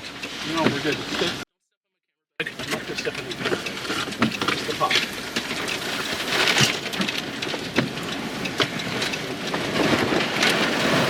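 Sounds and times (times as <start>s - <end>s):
rain drumming on car roof: 0.0s - 1.4s, 2.4s - 11.0s
hailstones knocking on car: 2.5s - 11.0s.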